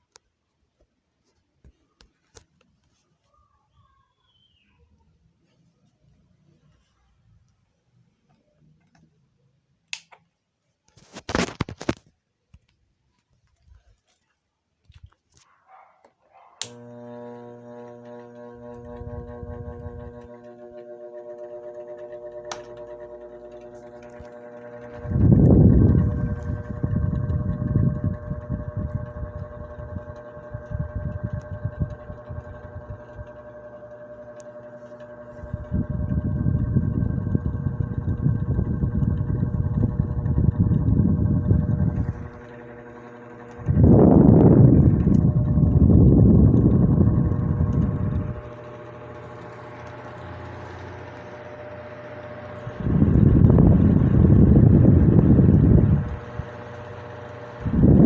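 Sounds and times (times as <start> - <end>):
switch clicking: 9.9 - 10.3, 16.6 - 17.1, 21.8 - 31.6
electric fan motor humming: 16.3 - 58.0.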